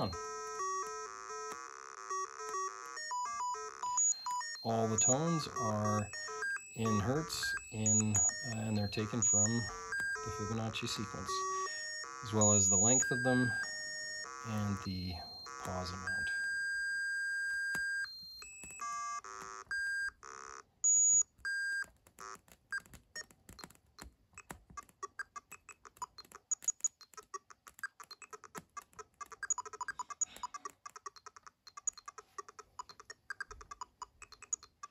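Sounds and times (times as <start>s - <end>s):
electronic tone beeps: 0.0s - 0.8s, 2.1s - 21.8s.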